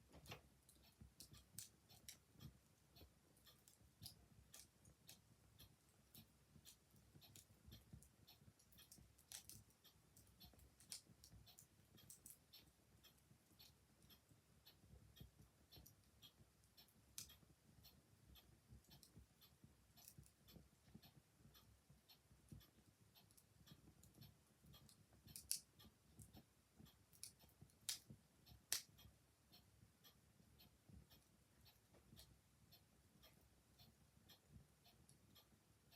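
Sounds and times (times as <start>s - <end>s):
wood fire crackling: 0.0s - 5.9s, 6.5s - 11.4s, 12.0s - 12.5s, 25.1s - 26.4s, 27.1s - 28.9s
clock ticking: 0.0s - 35.9s.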